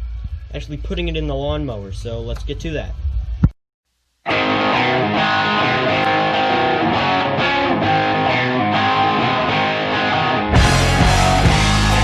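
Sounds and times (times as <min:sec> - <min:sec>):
distorted electric guitar instrumental: 0:04.3 - 0:12.0.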